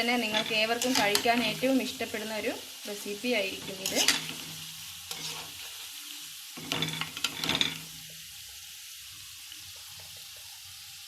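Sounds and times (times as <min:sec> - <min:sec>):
stirring clicks and scraping in pan: 0:00.0 - 0:01.9, 0:03.5 - 0:08.0
fritters sizzling in hot oil: 0:00.0 - 0:11.0.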